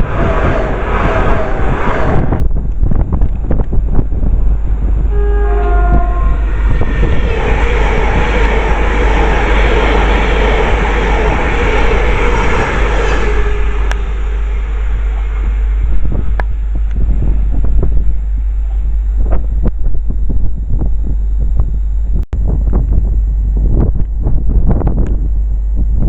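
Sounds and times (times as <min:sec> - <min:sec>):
train horn: 0:00.0 - 0:02.4, 0:05.0 - 0:17.5
train rushing past: 0:00.0 - 0:17.8
wind buffeting microphone: 0:00.0 - 0:26.0.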